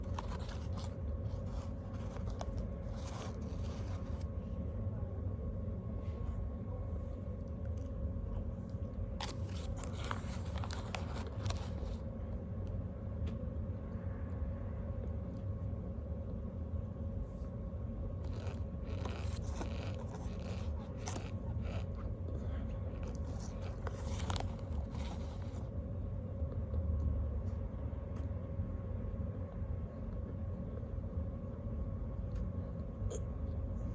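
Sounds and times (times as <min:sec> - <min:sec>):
person chewing crunchy snack: 0:00.0 - 0:04.2, 0:09.2 - 0:12.0, 0:18.2 - 0:22.1, 0:22.9 - 0:25.6
steady background hum: 0:00.0 - 0:33.9.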